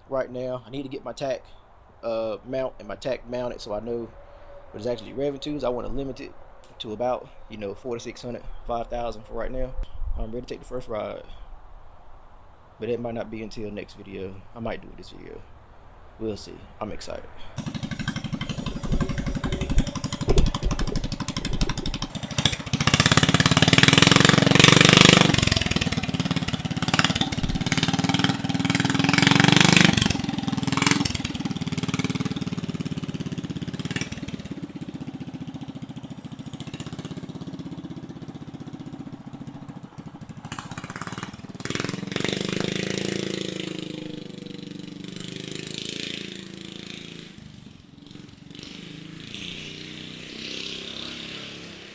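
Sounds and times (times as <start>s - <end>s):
single-cylinder engine revving: 17.6s - 51.9s.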